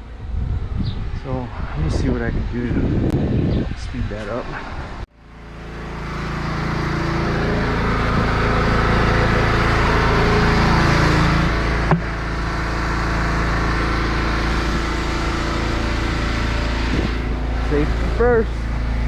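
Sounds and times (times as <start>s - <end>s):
pressure washer engine running: 5.1s - 19.0s.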